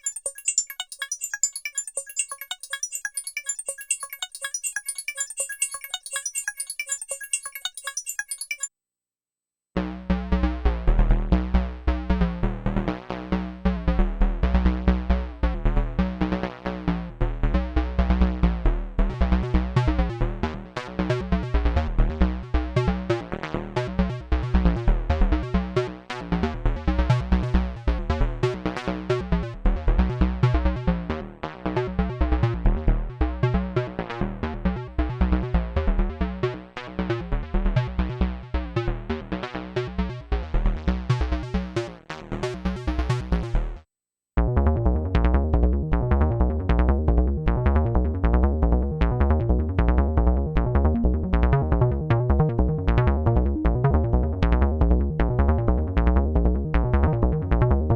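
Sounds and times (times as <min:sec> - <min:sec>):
synthesizer bass pattern: 0:00.0 - 0:08.7, 0:44.4 - 0:57.9.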